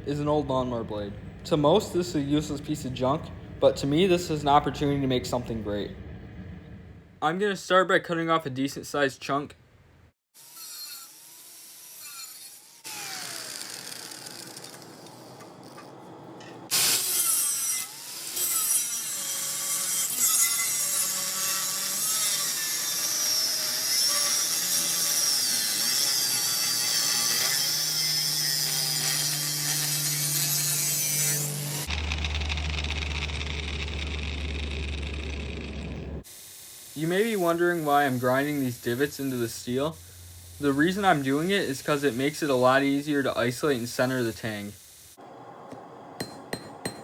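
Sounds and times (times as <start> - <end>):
low steady hum: 0.0 - 7.3
angle grinder cutting steel: 10.4 - 35.9, 36.5 - 43.0.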